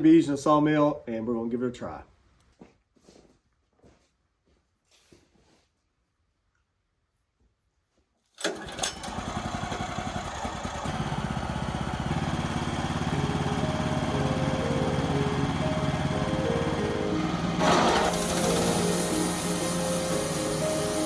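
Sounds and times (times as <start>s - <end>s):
small gasoline engine starting: 8.4s - 21.0s.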